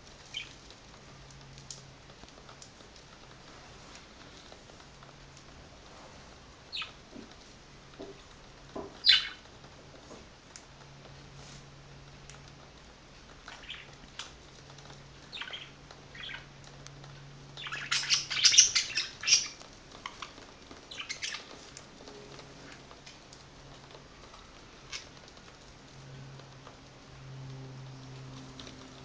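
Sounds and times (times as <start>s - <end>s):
budgerigars chirping: 9.0s - 9.4s, 15.3s - 16.4s, 17.6s - 19.6s.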